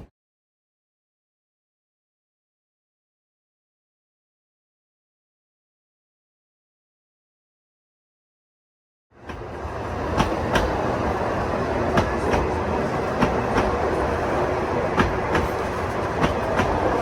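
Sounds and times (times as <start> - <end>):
train rumbling along track: 9.2 - 17.0
wheels clicking over rail joints: 9.2 - 17.0.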